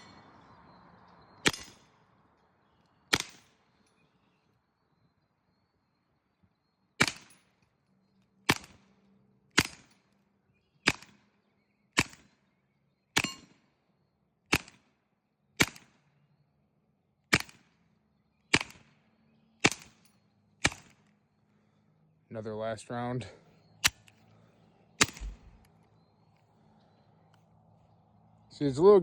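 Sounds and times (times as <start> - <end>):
suppressed pistol shots: 1.4 - 1.9, 3.1 - 3.5, 9.6 - 9.9, 13.2 - 13.5, 18.5 - 18.9, 19.6 - 20.0, 20.6 - 21.0, 25.0 - 25.7.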